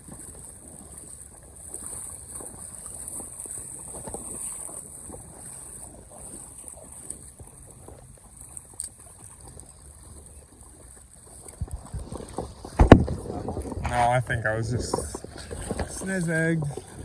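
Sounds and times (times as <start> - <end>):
water lapping against a boat: 0.0 - 17.0
wind buffeting microphone: 9.1 - 17.0.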